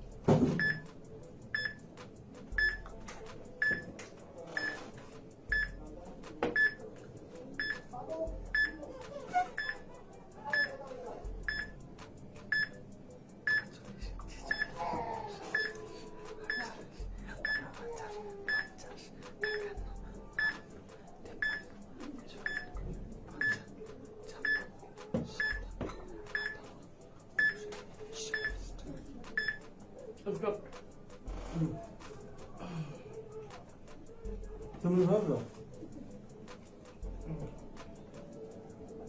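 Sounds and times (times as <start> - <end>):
faint background music: 0.0 - 39.0.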